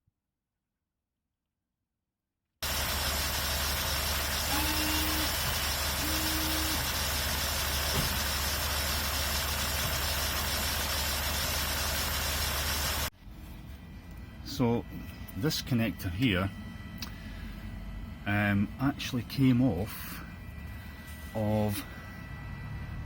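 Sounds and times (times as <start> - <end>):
diesel engine idling: 2.6 - 13.1
short steady hums: 2.6 - 13.1.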